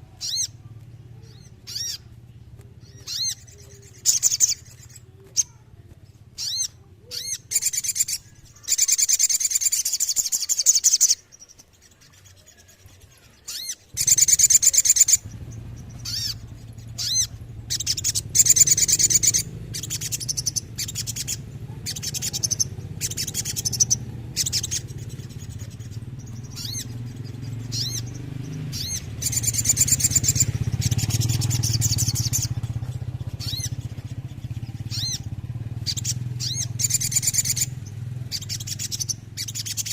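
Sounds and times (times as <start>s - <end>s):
sunbird chirping and trilling: 0.0s - 39.9s
steady low hum: 13.0s - 39.9s.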